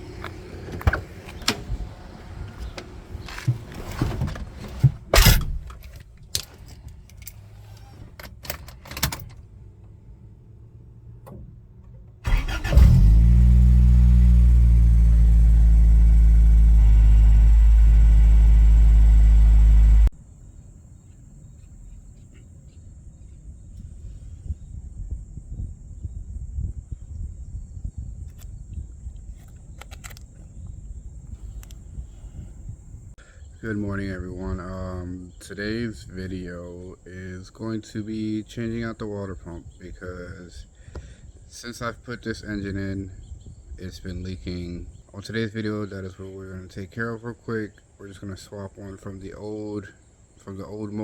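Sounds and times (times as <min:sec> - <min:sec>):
car engine starting and idling: 0:00.0 - 0:20.1.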